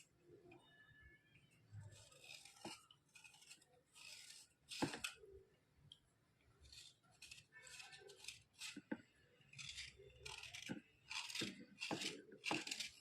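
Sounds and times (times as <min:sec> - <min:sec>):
scraping on slate pencils: 0:06.6 - 0:13.0.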